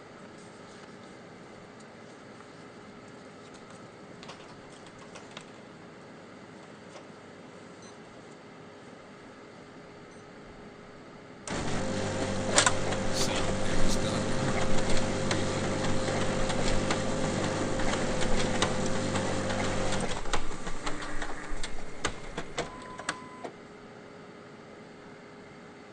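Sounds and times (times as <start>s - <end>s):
photocopier running: 11.5s - 23.2s.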